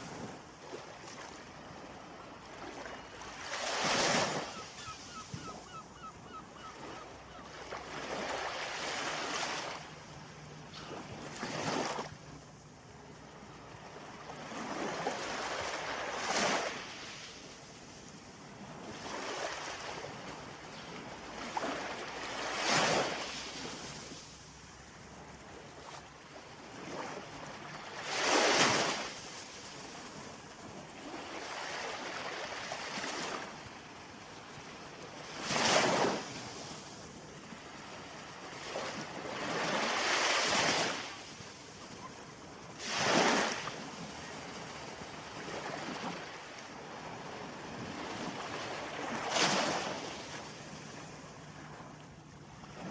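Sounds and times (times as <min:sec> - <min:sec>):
waves breaking: 0:07.6 - 0:12.2, 0:38.6 - 0:52.9.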